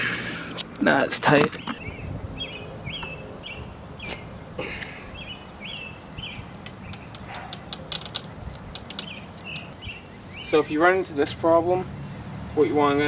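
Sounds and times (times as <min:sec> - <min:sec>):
bird chirping: 0:01.4 - 0:12.1
sharp clicks: 0:06.6 - 0:09.8.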